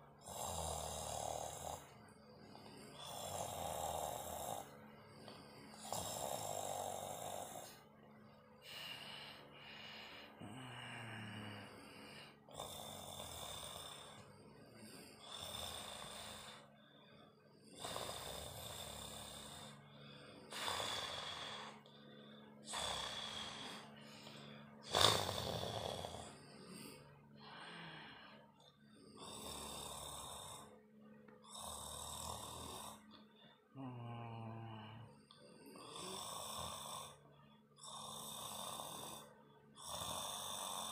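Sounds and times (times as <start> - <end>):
rasping snoring: 0.0 - 7.9, 8.6 - 16.8, 17.5 - 30.8, 31.4 - 33.2, 33.8 - 40.9.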